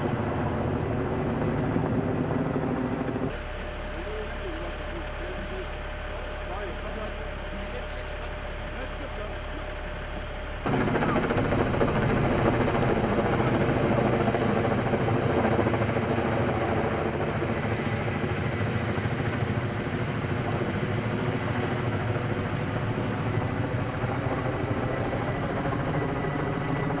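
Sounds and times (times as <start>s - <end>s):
helicopter rotor chop: 0.0s - 27.0s.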